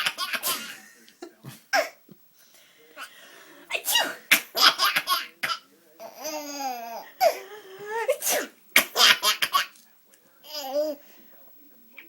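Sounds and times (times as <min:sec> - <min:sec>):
woman sneezing: 0:08.0 - 0:08.5.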